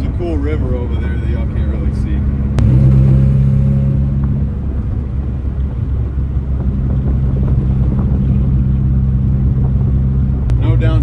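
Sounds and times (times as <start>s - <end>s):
road rumble: 0.0s - 11.0s
car engine running: 0.8s - 11.0s.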